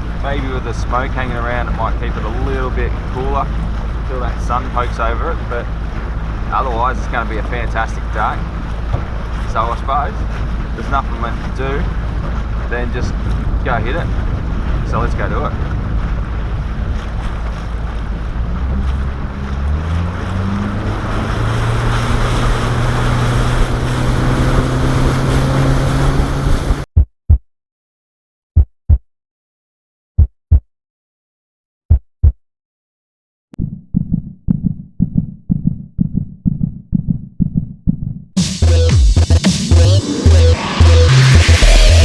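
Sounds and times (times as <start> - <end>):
outboard motor running: 0.0 - 26.8
wind buffeting microphone: 8.2 - 26.8
double thumps: 8.8 - 9.6, 28.6 - 29.1, 30.2 - 30.7, 31.9 - 32.4, 33.6 - 41.8
pulsing electronic music beat: 38.4 - 42.0.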